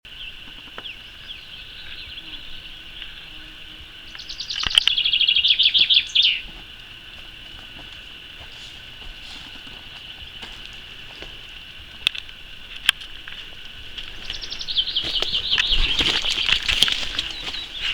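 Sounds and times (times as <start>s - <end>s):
birds singing: 0.1s - 17.9s
fast repeated bird chirping: 4.1s - 6.5s, 14.1s - 17.9s.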